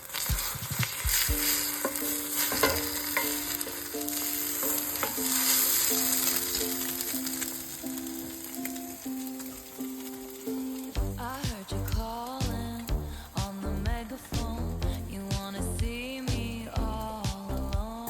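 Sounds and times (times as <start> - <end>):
food sizzling in a frying pan: 0.0 - 14.8
slow background music: 1.1 - 18.0.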